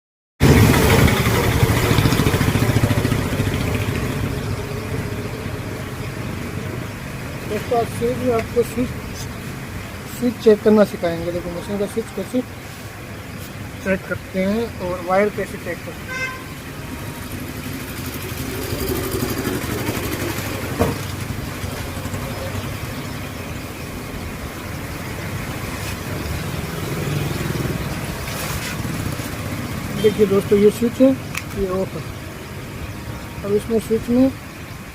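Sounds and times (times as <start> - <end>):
engine rumbling: 0.4 - 34.9
sharp click: 31.3 - 31.6.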